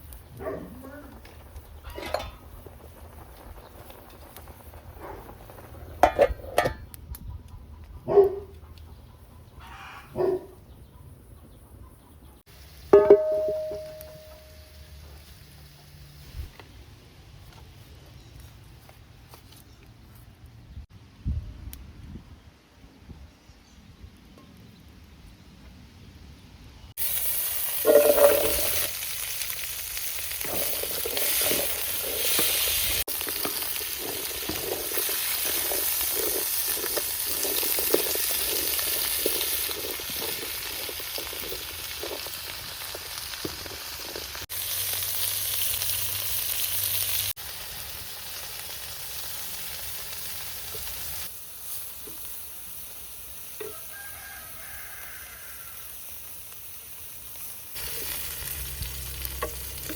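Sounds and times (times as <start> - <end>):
food sizzling in oil: 12.5 - 16.5, 27.0 - 59.9
utensil stirring in pan: 27.1 - 44.4, 57.8 - 59.9.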